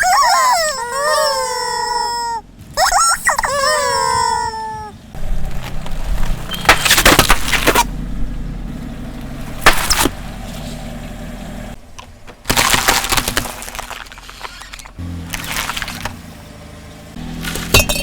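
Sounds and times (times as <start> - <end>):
car engine humming: 0.2 - 18.0
tyre crushing brittle objects: 5.2 - 7.9, 9.6 - 10.2, 12.2 - 16.2, 17.2 - 18.0.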